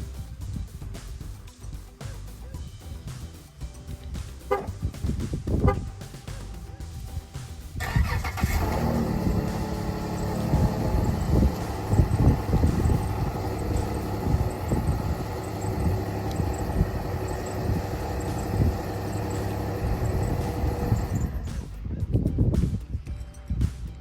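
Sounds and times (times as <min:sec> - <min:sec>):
car engine idling: 0:03.8 - 0:06.6, 0:07.7 - 0:21.8.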